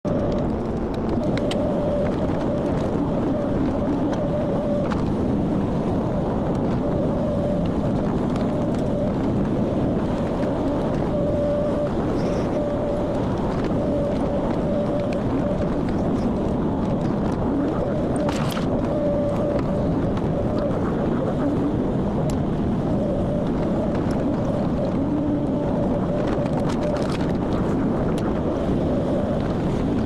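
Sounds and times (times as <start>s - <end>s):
high whine: 0.0s - 30.0s.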